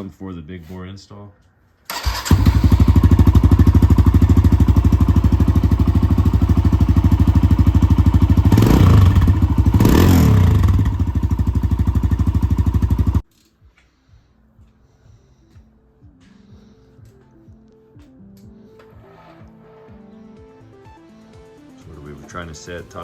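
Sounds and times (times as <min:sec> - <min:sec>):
engine throttle blips: 0:01.9 - 0:12.7
dirt bike engine idling: 0:02.0 - 0:13.2.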